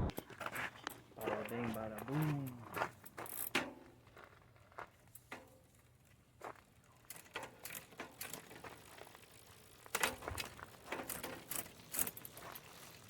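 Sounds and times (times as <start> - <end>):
mechanical clicking and rattling: 7.0 - 13.0.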